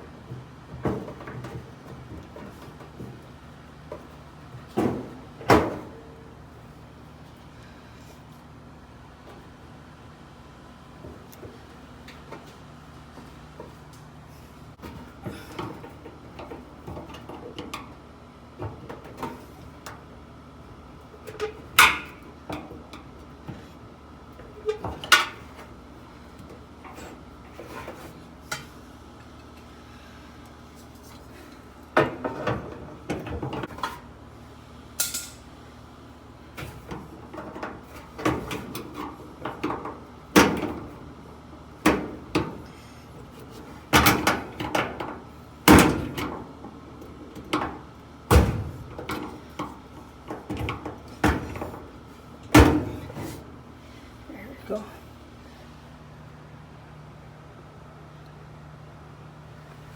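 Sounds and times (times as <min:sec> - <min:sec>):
hand tools and metal parts clinking: 0:35.0 - 0:35.4.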